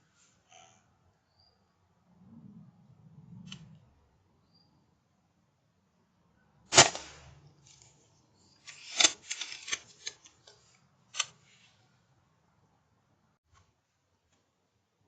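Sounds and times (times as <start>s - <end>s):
air rifle shot: 6.7s - 7.4s.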